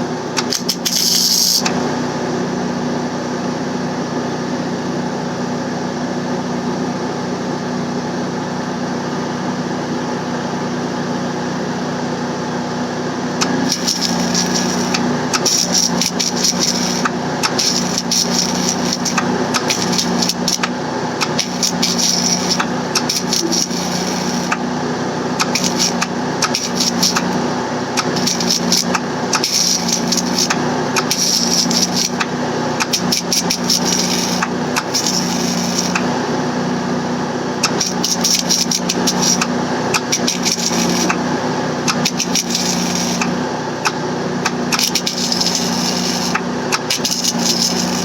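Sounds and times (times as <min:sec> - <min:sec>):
small engine running: 0:00.0 - 0:03.5, 0:11.2 - 0:48.0
rapid crackling and clicking: 0:00.4 - 0:01.8, 0:13.4 - 0:24.6, 0:25.4 - 0:36.1, 0:37.6 - 0:41.2, 0:41.8 - 0:48.0.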